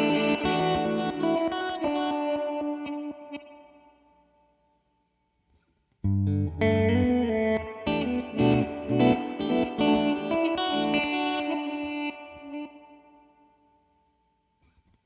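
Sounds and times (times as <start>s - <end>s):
electric guitar notes and chords: 0.0s - 3.9s, 6.0s - 13.8s.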